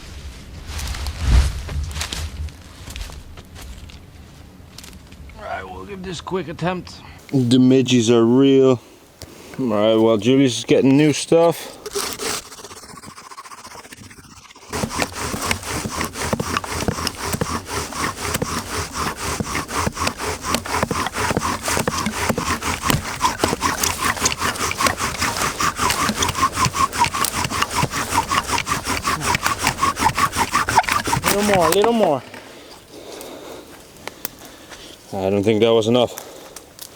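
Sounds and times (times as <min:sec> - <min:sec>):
bow drill grinding rub: 0:07.3 - 0:33.5.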